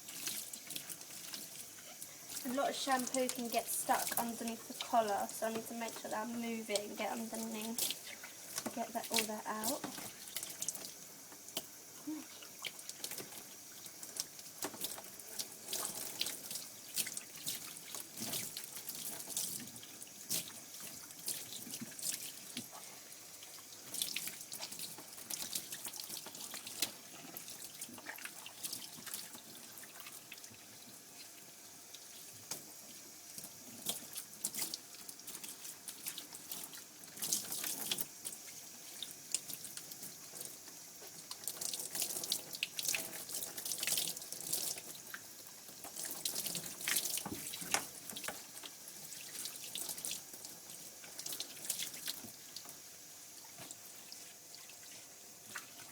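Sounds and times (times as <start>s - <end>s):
water dripping: 0.1s - 22.7s.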